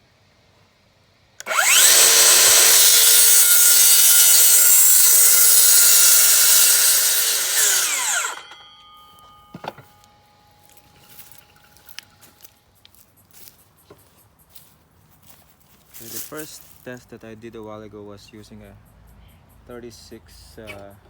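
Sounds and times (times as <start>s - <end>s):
circular saw cutting: 1.4s - 8.6s.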